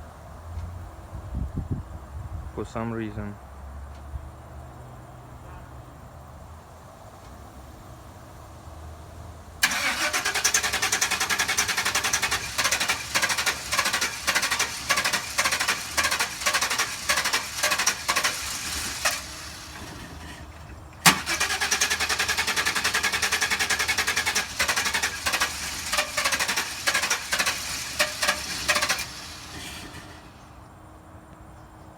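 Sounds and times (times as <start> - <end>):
starter cranking engine: 9.6 - 30.5.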